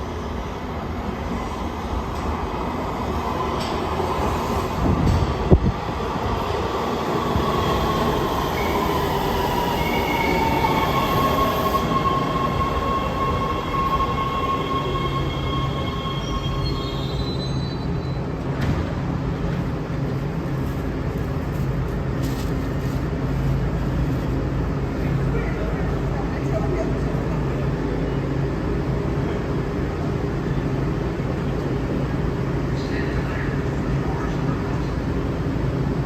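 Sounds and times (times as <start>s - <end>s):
train rumble: 0.0s - 36.0s
subway wheels squealing: 6.5s - 18.5s.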